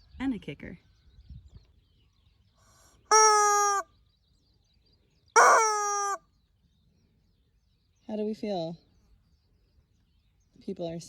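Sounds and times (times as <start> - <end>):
rubber chicken squawking: 3.1 - 3.8, 5.4 - 6.2.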